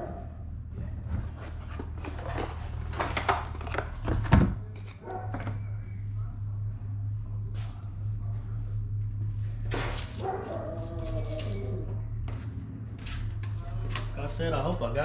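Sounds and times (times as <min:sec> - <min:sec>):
steady low hum: 0:00.0 - 0:15.0
rustling and clicking of objects: 0:00.8 - 0:05.5.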